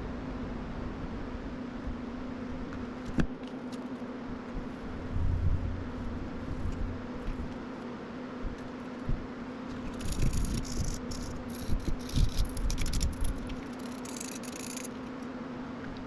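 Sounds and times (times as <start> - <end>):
low rumble: 4.6 - 7.6
small electric motor whirring: 9.7 - 15.3.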